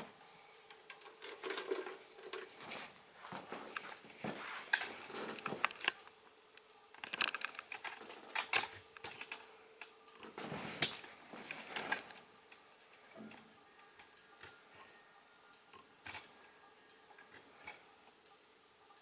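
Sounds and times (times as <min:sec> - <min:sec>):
faint steady hum: 0:00.0 - 0:19.0
plastic fan clicking and rattling: 0:00.6 - 0:02.7, 0:04.7 - 0:15.0, 0:15.7 - 0:18.4.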